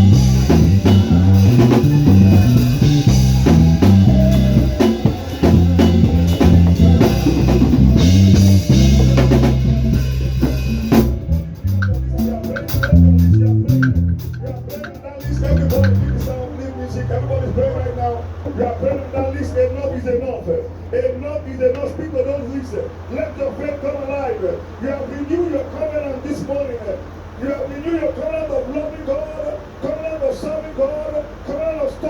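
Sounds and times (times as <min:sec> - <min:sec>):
drum kit: 0:00.0 - 0:16.6
guitar: 0:00.0 - 0:20.9
bass guitar line: 0:00.0 - 0:27.4.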